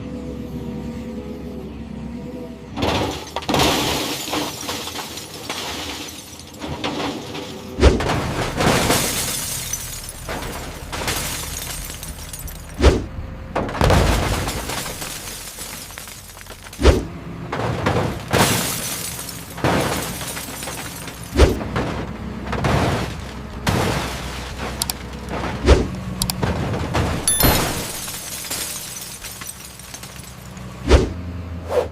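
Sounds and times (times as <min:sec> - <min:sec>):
glass shattering: 0:02.8 - 0:07.7, 0:08.3 - 0:12.8, 0:14.0 - 0:16.8, 0:18.4 - 0:21.3, 0:27.0 - 0:30.7
metal crumpling crashes: 0:02.8 - 0:12.8, 0:13.6 - 0:30.7.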